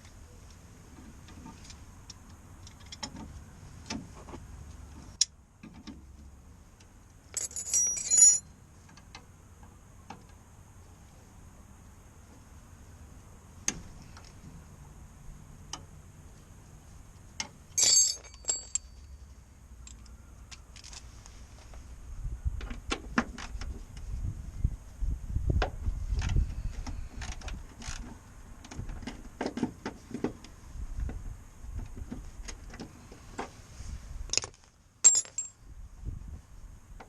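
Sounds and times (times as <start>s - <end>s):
bright metallic jangles: 7.3s - 8.5s, 17.8s - 19.3s, 35.0s - 35.6s
metal tools clinking and tapping: 7.3s - 8.5s, 17.8s - 19.3s, 34.3s - 35.6s.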